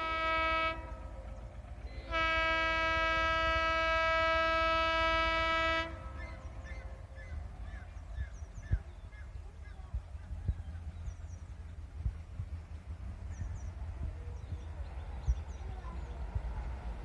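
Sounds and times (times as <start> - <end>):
locomotive air horn blast: 0.0 - 1.0, 2.0 - 6.2.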